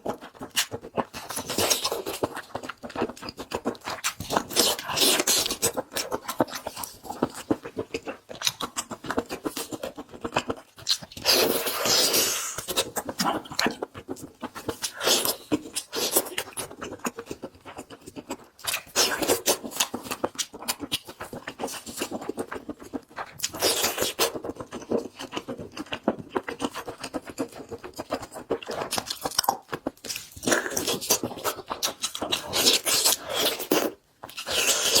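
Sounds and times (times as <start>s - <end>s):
person chewing and biting: 0.0s - 35.0s
slurping: 8.8s - 17.1s, 26.7s - 35.0s.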